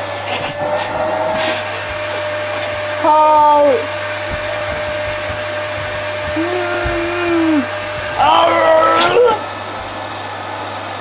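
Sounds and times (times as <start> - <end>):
vacuum cleaner running: 0.0 - 11.0
person calling out: 6.3 - 9.5.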